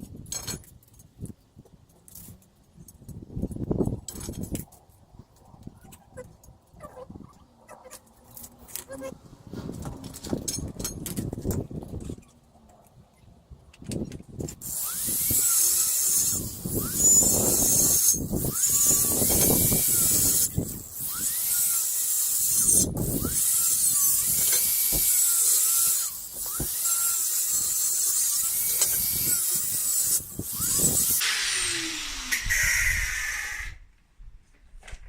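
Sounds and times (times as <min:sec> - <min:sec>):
hand saw cutting metal: 0:14.5 - 0:33.7.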